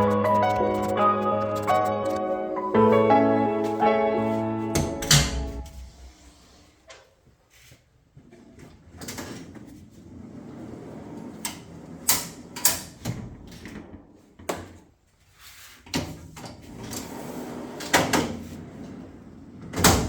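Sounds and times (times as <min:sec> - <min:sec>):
fridge slide rolling on runners: 0:16.6 - 0:19.9.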